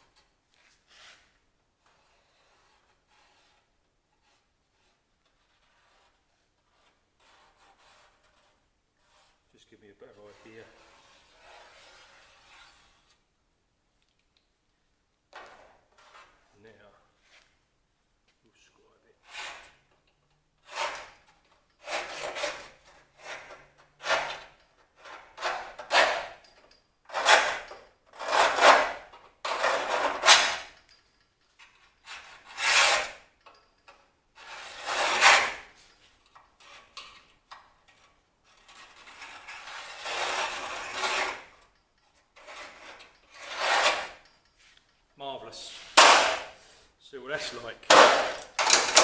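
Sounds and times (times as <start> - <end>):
scriber scratching sheet steel: 1.9 - 9.5, 10.1 - 13.2, 19.2 - 19.9, 20.6 - 30.9, 31.6 - 33.4, 34.4 - 36.0, 37.9 - 41.8, 42.4 - 44.3.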